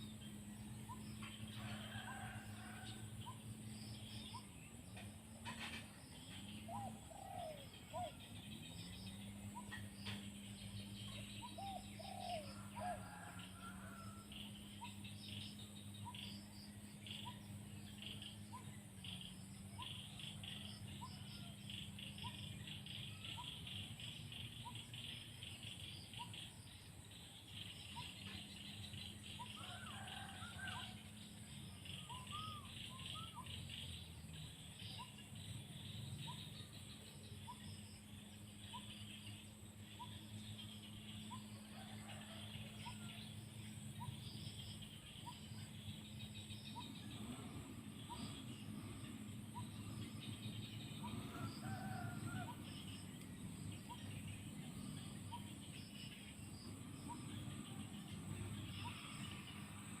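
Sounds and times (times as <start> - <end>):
bird chirping: 0.0 - 60.0
insects buzzing: 0.0 - 60.0
steady low hum: 0.0 - 60.0.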